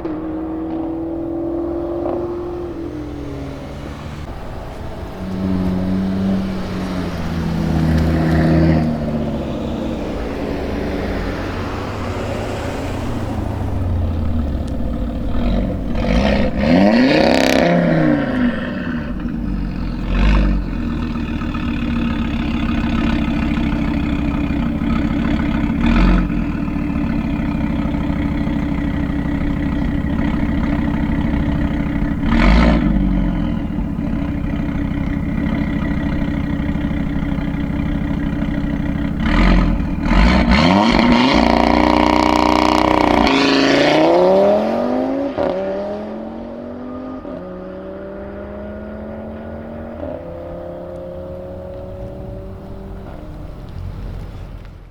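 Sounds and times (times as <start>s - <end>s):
exhaust pops: 0.0s - 43.8s
car engine revving: 0.0s - 54.9s.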